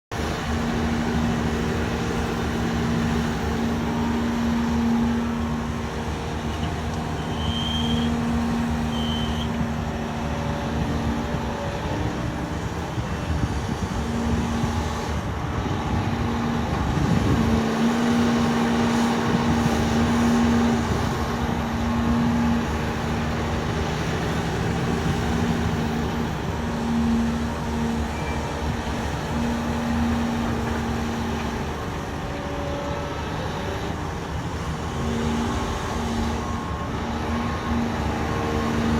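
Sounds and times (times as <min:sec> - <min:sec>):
diesel engines rumbling: 0:00.1 - 0:38.9.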